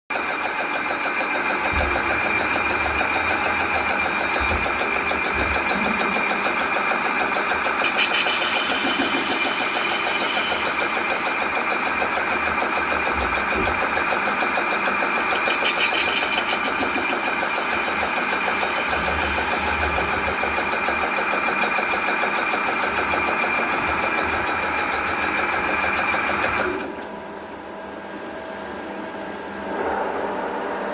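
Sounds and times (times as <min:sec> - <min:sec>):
lathe running with high whine: 0:00.1 - 0:27.0
bright hissy machine noise: 0:01.3 - 0:22.5.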